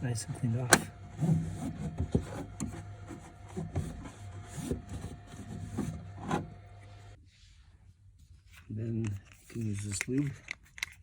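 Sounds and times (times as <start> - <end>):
printer low hum: 0.0 - 7.2.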